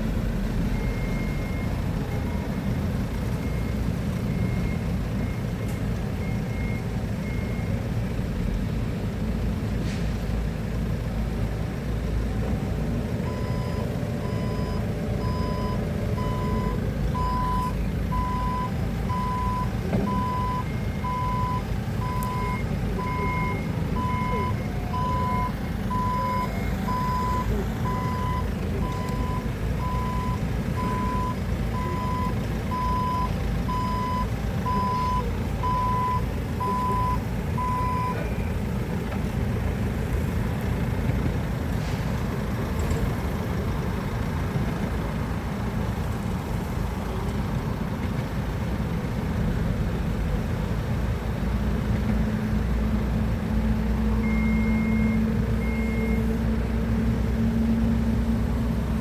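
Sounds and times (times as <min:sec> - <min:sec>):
forklift engine running: 0:00.0 - 0:59.0
reversing alarm beeping: 0:00.6 - 0:02.5, 0:13.2 - 0:38.6, 0:54.2 - 0:56.3.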